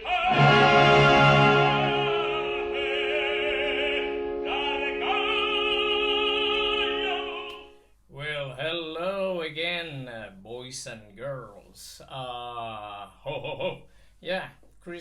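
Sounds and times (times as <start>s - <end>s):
operatic singing with vibrato: 0.0s - 7.7s.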